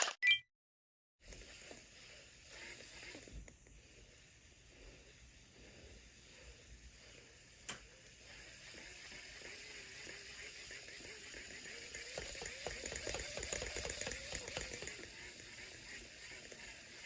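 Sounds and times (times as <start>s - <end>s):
fishing reel whirring gear ticks: 1.2s - 4.0s, 6.2s - 17.0s.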